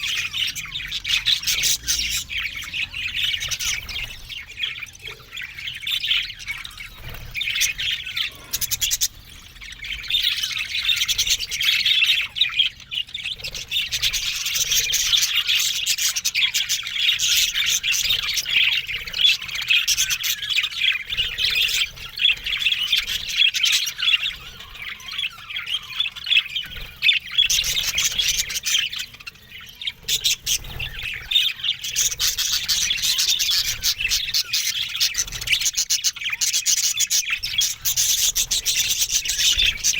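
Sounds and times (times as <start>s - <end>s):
budgerigars chattering: 0.0s - 39.9s.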